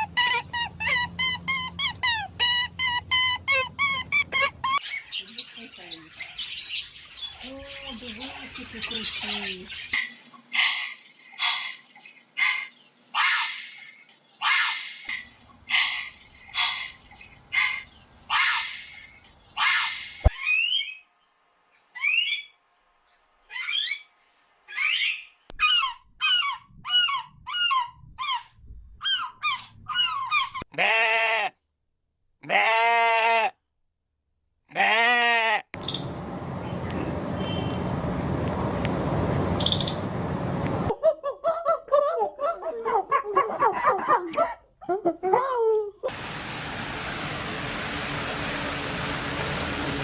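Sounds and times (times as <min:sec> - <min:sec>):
farm animal honking calls: 0:34.7 - 0:35.6.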